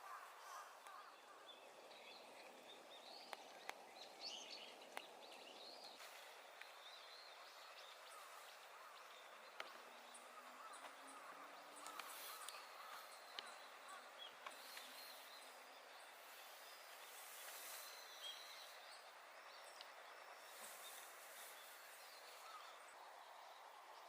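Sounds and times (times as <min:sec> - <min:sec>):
distant bird calls: 0:00.0 - 0:24.0.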